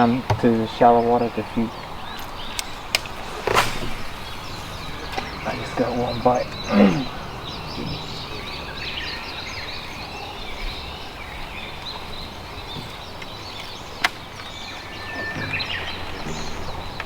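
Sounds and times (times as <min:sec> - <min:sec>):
birds chirping and singing: 0:00.0 - 0:17.0
low background rumble: 0:00.8 - 0:13.3.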